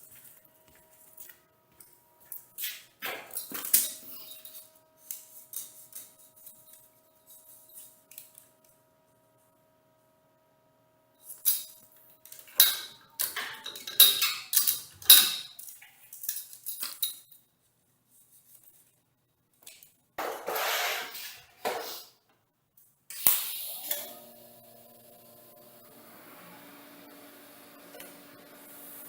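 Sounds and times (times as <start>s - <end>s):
steel parts and tools clanking: 3.3s - 8.4s, 11.2s - 17.4s.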